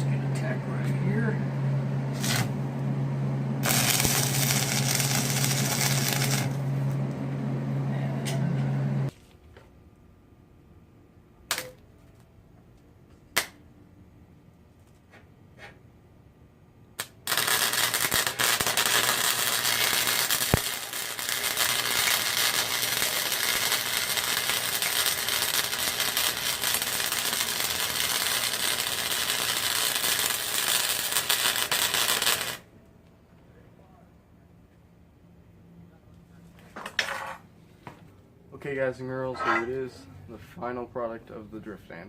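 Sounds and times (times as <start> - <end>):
welding arc crackling: 2.1 - 2.6, 3.6 - 7.0, 17.0 - 32.7.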